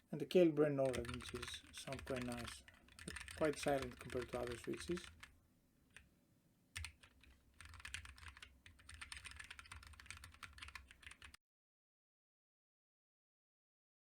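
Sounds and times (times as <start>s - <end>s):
mechanical keyboard typing: 0.8s - 5.3s, 6.8s - 11.4s.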